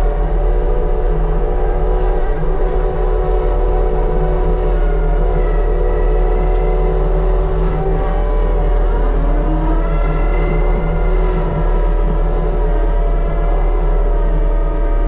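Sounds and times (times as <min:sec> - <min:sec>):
diesel engine running under load: 0:00.0 - 0:15.0.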